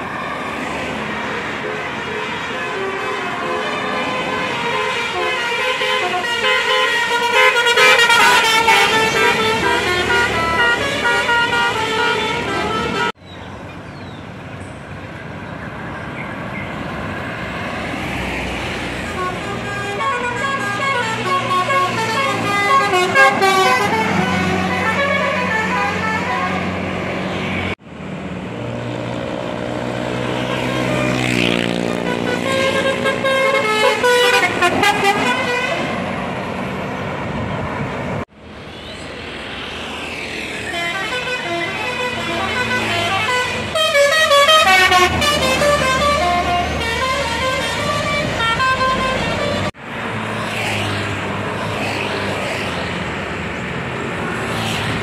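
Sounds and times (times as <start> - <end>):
bus horns playing melodies: 0.0 - 13.2, 18.1 - 27.8, 30.1 - 36.4, 40.6 - 49.8.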